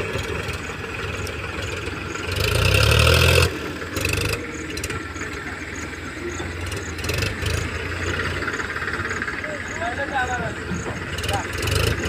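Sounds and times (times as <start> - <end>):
tractor diesel engine running: 0.0 - 12.0.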